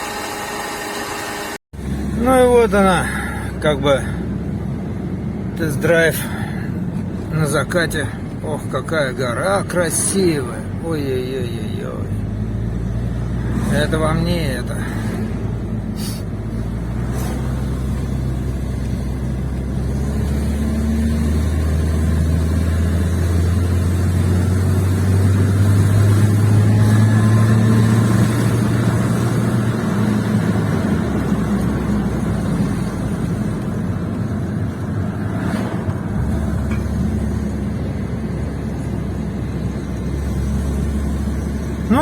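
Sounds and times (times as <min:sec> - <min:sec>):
road noise: 0:00.0 - 0:42.0
car engine accelerating: 0:11.4 - 0:42.0.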